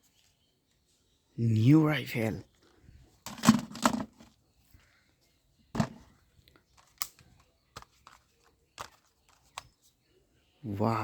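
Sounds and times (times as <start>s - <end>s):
plastic toy gun clicks: 6.8s - 8.2s.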